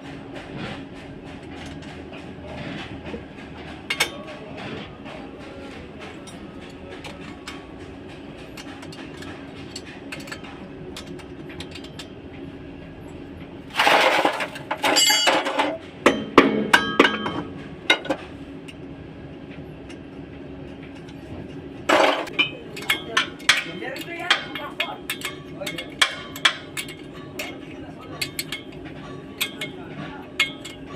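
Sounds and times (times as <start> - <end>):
metal tools clanking: 8.5 - 12.2, 13.7 - 18.2, 21.9 - 30.9
loud metal clatter: 13.7 - 18.3, 21.9 - 30.9.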